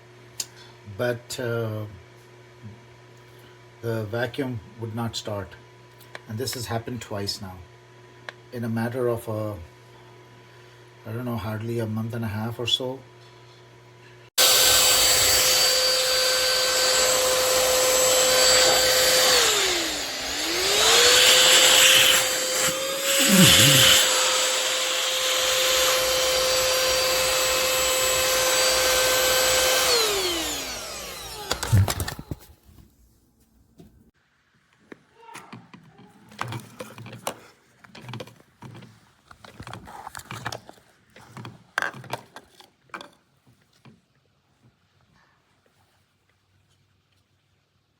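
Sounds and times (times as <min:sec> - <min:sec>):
handheld vacuum whining: 0:14.4 - 0:32.4.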